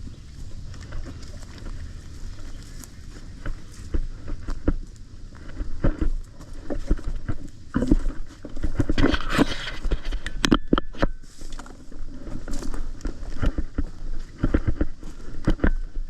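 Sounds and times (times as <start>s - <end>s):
gear and clothing rustling: 0.0s - 10.4s, 11.2s - 16.0s
footsteps walking: 0.0s - 16.0s.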